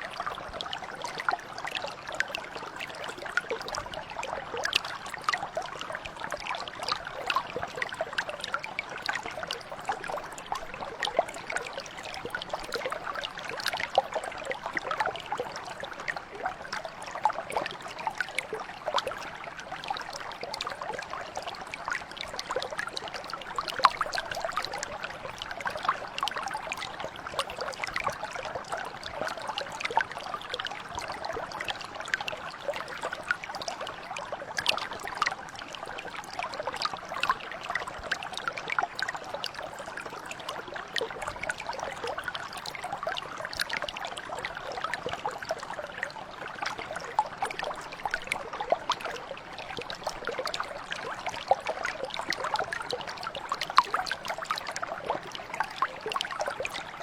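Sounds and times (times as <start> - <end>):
stream water trickling: 0.0 - 57.0.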